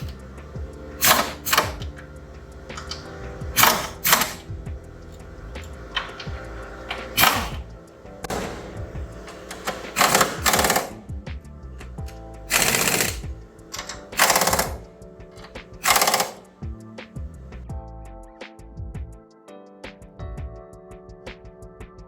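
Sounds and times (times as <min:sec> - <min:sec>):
impact wrench rattling: 0:00.0 - 0:11.2, 0:11.9 - 0:16.5
background music: 0:00.0 - 0:22.0.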